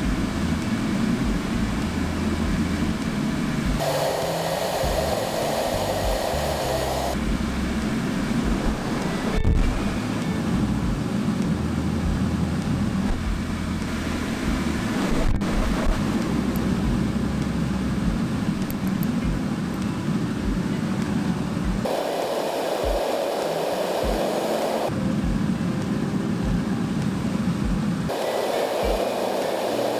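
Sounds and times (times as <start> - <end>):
fan blowing air: 0.0 - 29.9.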